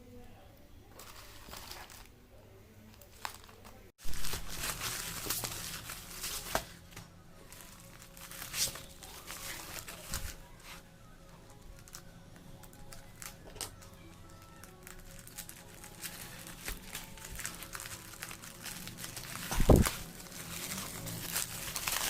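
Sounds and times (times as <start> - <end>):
packaging crinkling and tearing: 1.0 - 2.1, 3.1 - 6.7, 7.5 - 10.4, 12.6 - 22.0.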